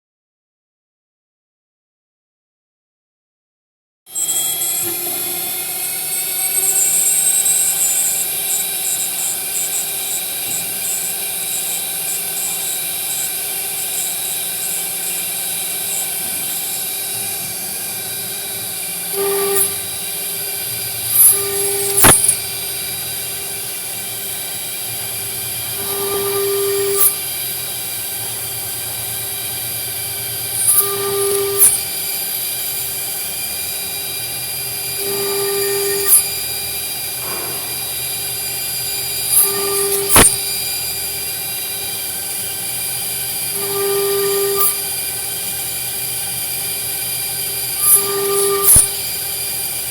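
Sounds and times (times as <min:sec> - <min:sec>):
router spindle milling metal: 0:04.1 - 0:49.9
sharp click: 0:19.2 - 0:19.8, 0:21.1 - 0:22.5, 0:35.8 - 0:36.3, 0:39.3 - 0:40.6, 0:47.8 - 0:49.0.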